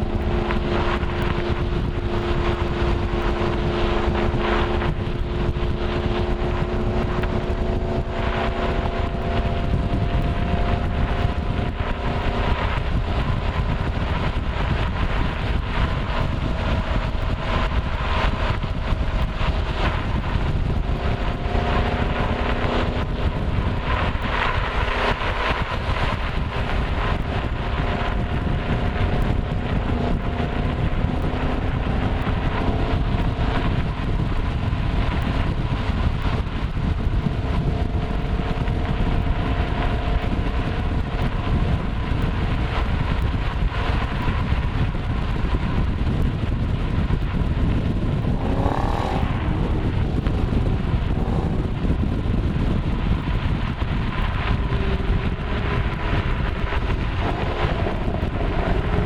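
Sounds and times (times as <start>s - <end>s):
car exhaust drone: 0.0s - 59.0s
road noise: 0.0s - 59.0s.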